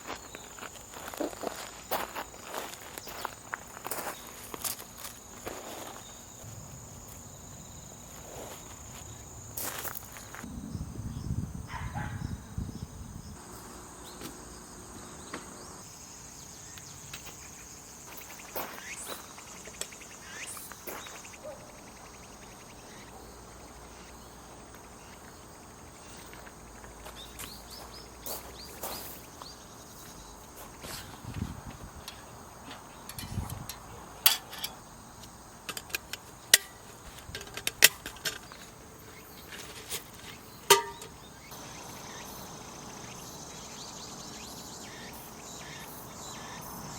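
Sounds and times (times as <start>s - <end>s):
footsteps: 0.0s - 7.2s, 8.1s - 10.5s
insects chirring: 0.0s - 46.9s.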